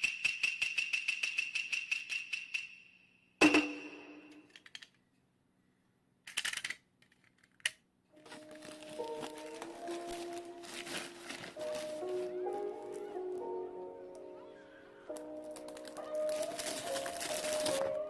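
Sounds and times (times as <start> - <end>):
music with held notes: 8.2 - 18.0.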